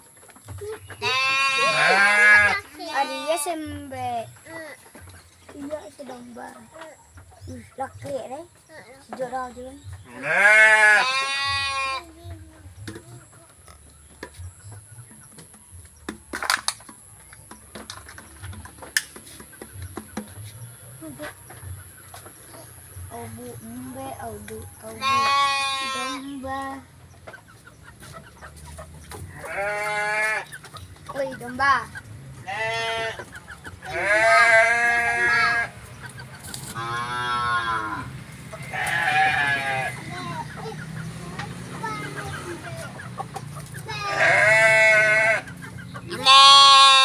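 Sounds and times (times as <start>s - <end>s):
sheep bleating: 1.0s - 3.4s, 10.1s - 12.0s, 25.0s - 26.2s, 29.3s - 30.4s, 32.4s - 33.2s, 33.9s - 35.7s, 36.8s - 38.0s, 38.7s - 40.0s, 44.0s - 45.5s, 46.1s - 47.0s.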